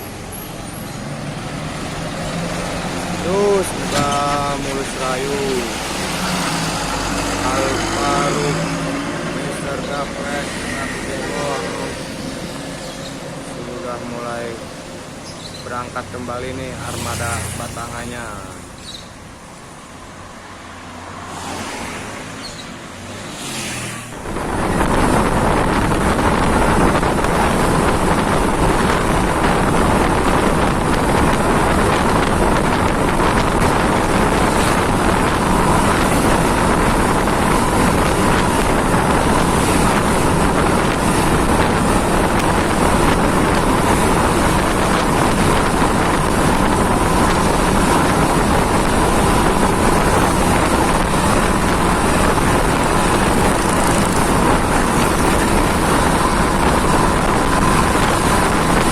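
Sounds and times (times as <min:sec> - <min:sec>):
vehicle and road noise: 0:00.0 - 0:58.9
wind buffeting microphone: 0:24.1 - 0:58.9.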